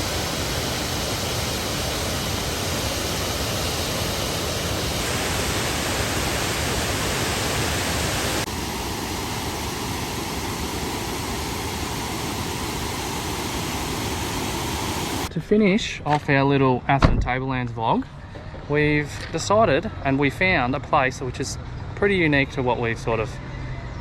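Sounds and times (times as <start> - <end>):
waterfall roaring: 0.0 - 15.3.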